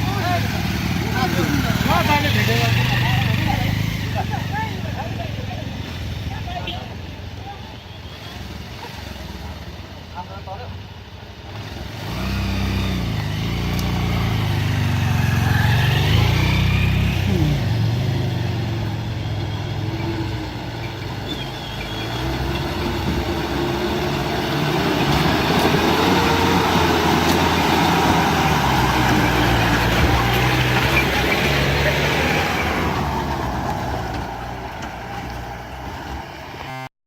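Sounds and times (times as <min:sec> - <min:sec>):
vehicle engine revving: 0:00.0 - 0:06.4, 0:11.5 - 0:36.9.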